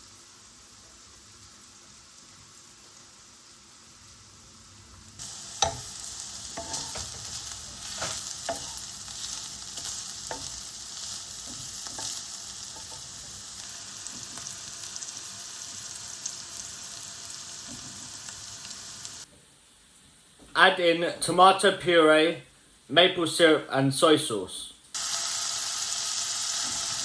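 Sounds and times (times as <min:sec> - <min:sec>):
mince sizzling in a frying pan: 0:00.0 - 0:19.3, 0:24.9 - 0:27.0.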